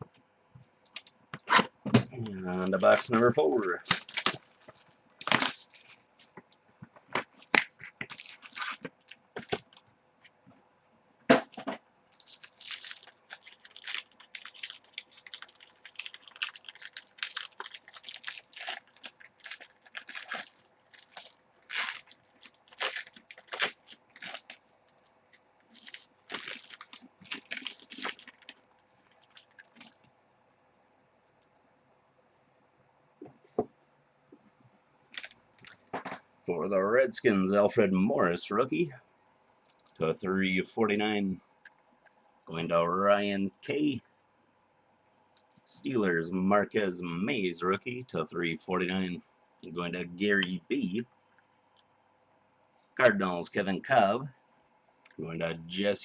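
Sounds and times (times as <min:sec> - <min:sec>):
plastic wrapping crackling: 0:02.5 - 0:09.9, 0:12.1 - 0:30.1, 0:35.0 - 0:35.9.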